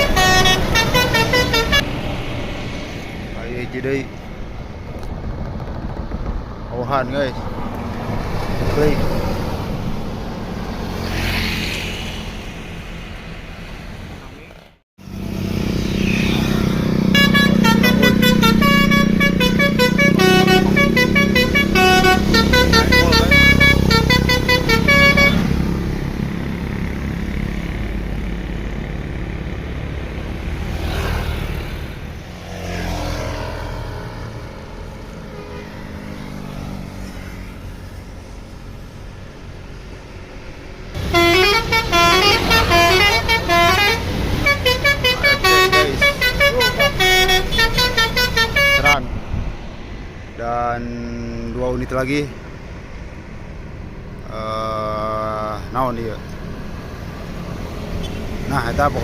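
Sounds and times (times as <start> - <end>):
musical air horn tune: 0.0 - 1.8, 17.1 - 25.6, 41.0 - 49.0
bus engine noise: 0.0 - 59.0.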